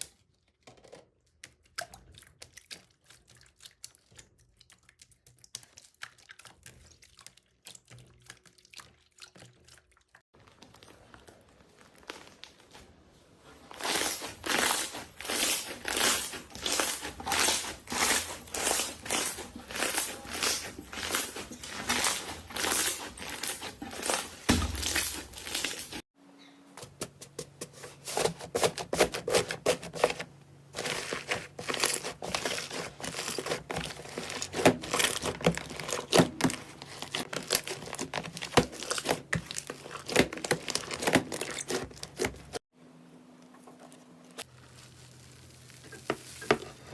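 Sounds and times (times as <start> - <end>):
slime crinkling crackles: 10.3 - 26.0, 30.8 - 42.6, 44.4 - 46.9.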